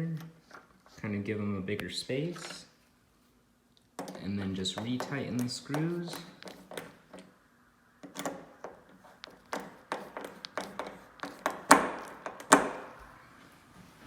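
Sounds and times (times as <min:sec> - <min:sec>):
door latch clicking: 0:08.0 - 0:08.7, 0:09.5 - 0:13.0.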